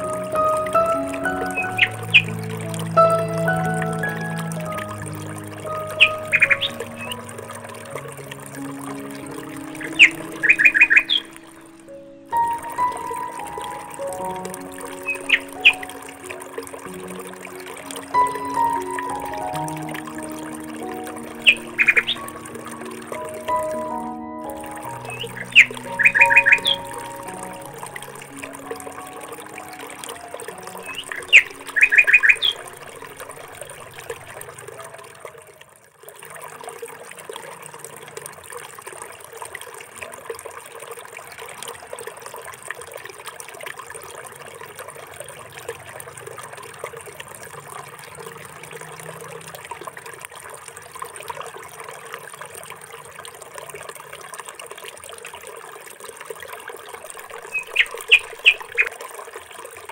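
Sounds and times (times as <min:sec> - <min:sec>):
trickling water-like hiss: 0:00.0 - 0:59.9
bird chirping: 0:00.7 - 0:02.5, 0:05.8 - 0:07.3, 0:09.6 - 0:13.9, 0:15.0 - 0:16.0, 0:21.3 - 0:27.7, 0:30.6 - 0:33.0, 0:57.4 - 0:58.9.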